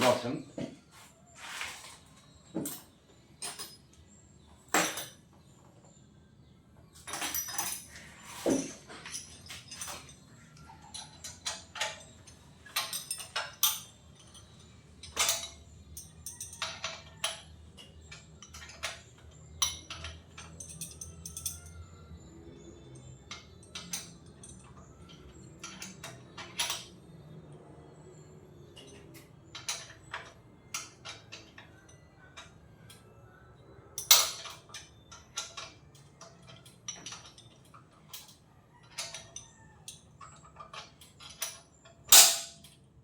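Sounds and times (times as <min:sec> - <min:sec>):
hand tools clinking on metal: 0:04.7 - 0:05.2, 0:07.0 - 0:27.4, 0:34.0 - 0:42.8.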